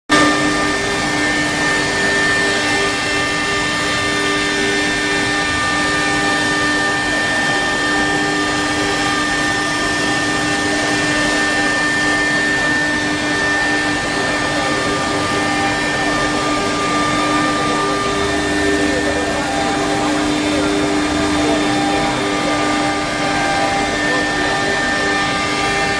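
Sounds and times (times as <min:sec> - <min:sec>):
high-speed router spindle whine: 0:00.1 - 0:25.9.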